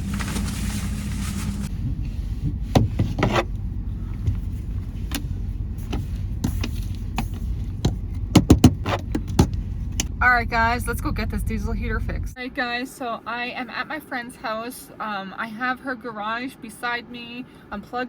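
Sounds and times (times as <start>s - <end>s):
vehicle engine rumble: 0.0s - 12.4s
steady hum: 0.0s - 12.6s
clicks and knocks: 6.4s - 10.1s.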